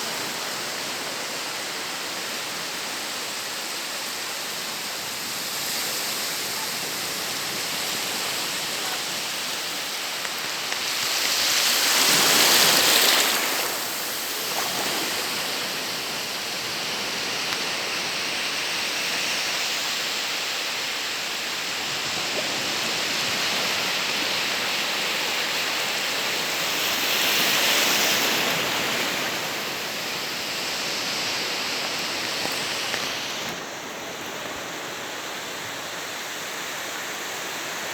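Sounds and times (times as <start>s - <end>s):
ocean waves hissing: 0.0s - 37.9s
waves breaking: 5.0s - 19.8s.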